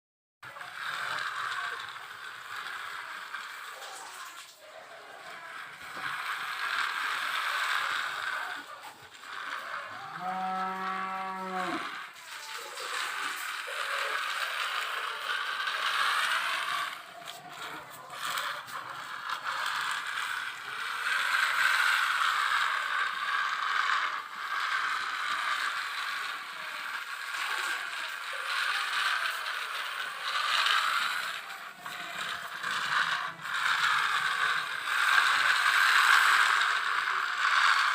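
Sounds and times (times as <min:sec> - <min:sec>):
toy cars rolling down plastic track: 0:00.4 - 0:37.9.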